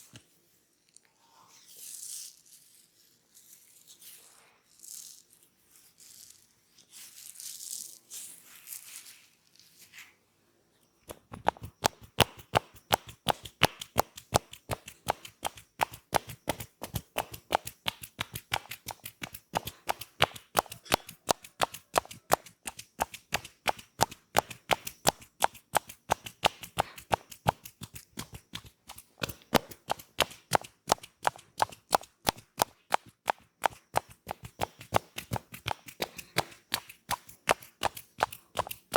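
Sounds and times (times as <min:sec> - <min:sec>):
soft rubbing and rustling: 0:00.0 - 0:10.3
hands slapping in massage: 0:11.1 - 0:38.9.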